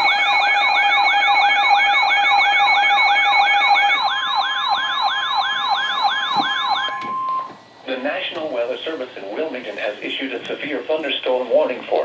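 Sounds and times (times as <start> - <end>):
electronic siren alert yelp: 0.0 - 7.5.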